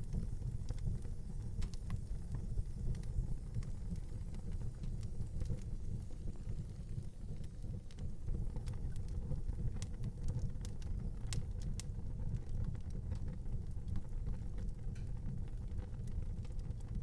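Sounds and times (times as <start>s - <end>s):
burning wood crackling and popping: 0.0s - 17.0s
flame rumbling: 0.0s - 17.0s.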